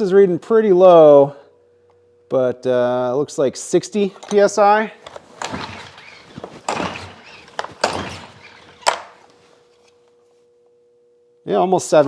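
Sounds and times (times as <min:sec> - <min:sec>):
faint steady hum: 0:00.0 - 0:12.0
recoil pull cord rasping: 0:04.1 - 0:09.6.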